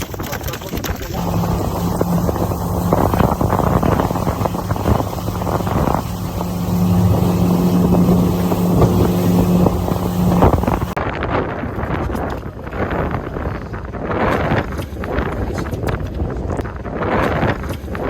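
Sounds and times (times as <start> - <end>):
boat motor running: 0.0 - 11.0
water rushing: 0.0 - 11.0
wind buffeting microphone: 0.0 - 18.0.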